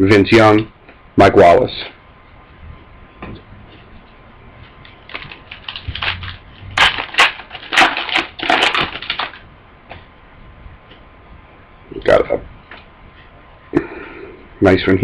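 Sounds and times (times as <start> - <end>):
wrapper tearing and crinkling: 4.8 - 9.4.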